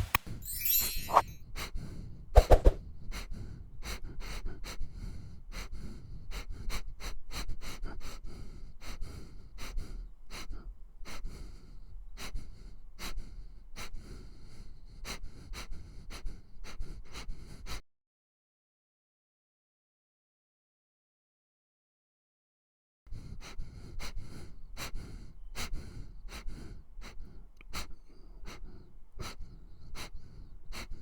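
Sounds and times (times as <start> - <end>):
dog sniffing: 23.2 - 31.0.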